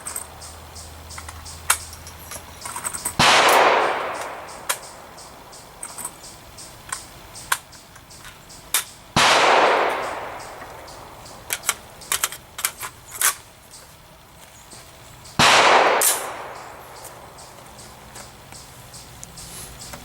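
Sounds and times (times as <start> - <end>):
sharp clicks and snaps: 1.1 - 13.4, 15.5 - 20.0
gunshots: 3.2 - 5.5, 9.2 - 12.2, 15.4 - 17.4.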